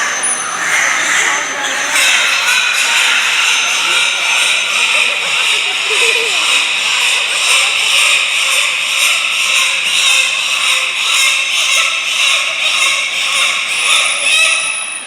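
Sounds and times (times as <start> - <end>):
dolphins squeaking and whistling: 0.0 - 15.0.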